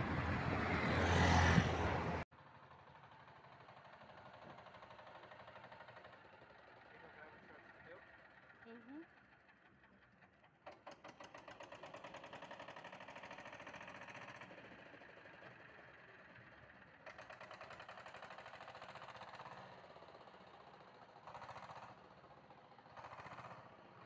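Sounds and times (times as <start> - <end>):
faint pulsing vehicle engine: 0.0 - 2.3.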